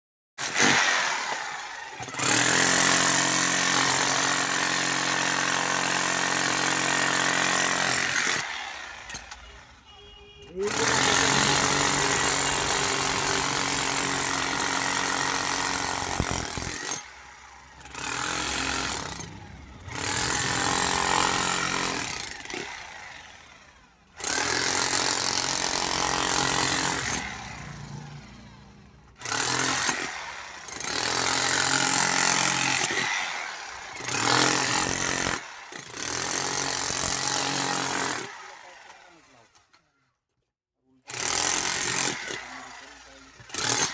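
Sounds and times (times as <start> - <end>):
power tool whining: 0.4 - 28.2.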